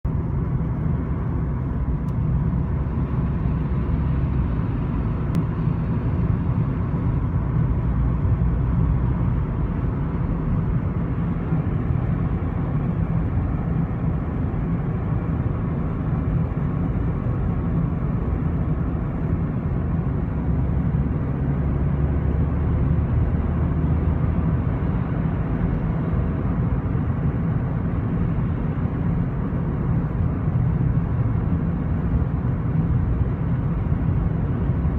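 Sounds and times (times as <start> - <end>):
road and engine rumble in car: 0.0 - 34.9.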